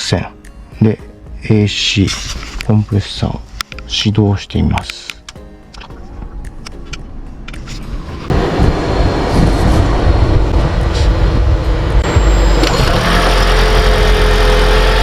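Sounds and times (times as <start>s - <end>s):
car engine starting and running: 6.1s - 15.0s
steady tone: 7.2s - 15.0s.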